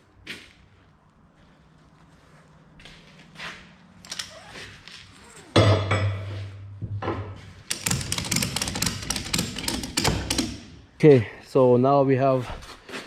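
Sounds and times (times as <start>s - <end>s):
ratchet strap clicking: 7.7s - 10.7s.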